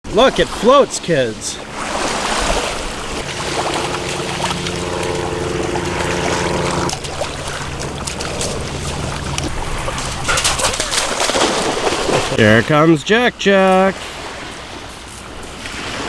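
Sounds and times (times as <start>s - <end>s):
surf: 0.0s - 16.0s
wind: 0.0s - 16.0s
engine drone: 1.6s - 12.4s.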